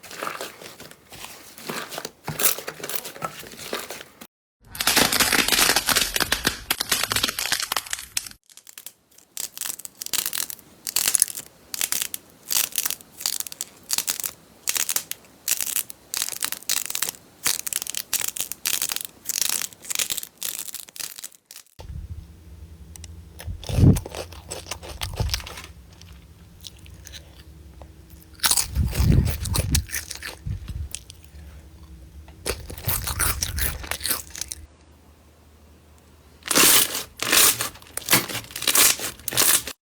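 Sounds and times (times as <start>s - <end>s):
slime crunching by hand: 4.8s - 34.7s, 36.5s - 39.8s
low steady hum: 21.8s - 39.7s.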